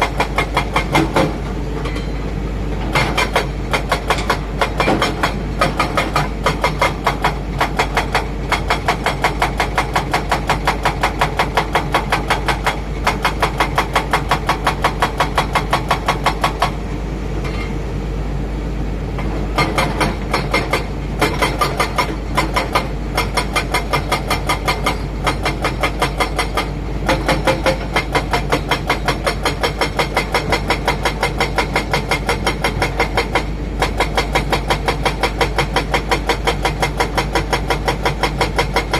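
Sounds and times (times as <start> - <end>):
diesel machinery clattering: 0.0 - 16.8, 19.1 - 38.9
low machinery hum: 15.0 - 34.5.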